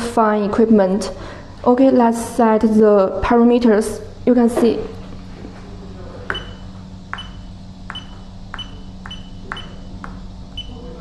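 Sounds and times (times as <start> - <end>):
steady low hum: 0.0 - 11.0.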